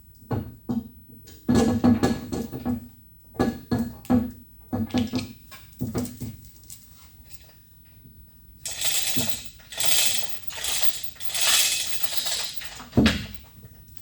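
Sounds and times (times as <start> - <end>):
metal parts scraping and clinking: 8.7 - 14.0.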